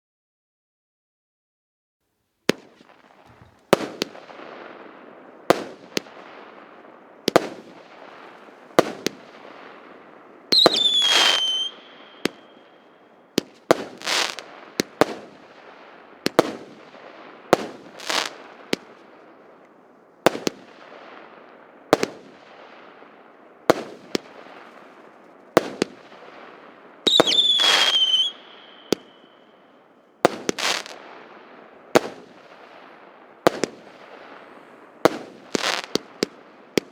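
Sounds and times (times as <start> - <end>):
firework launch bangs: 2.5 - 4.3
firework crackling: 2.5 - 36.9
firework falling whistle: 10.5 - 12.9, 27.0 - 29.5.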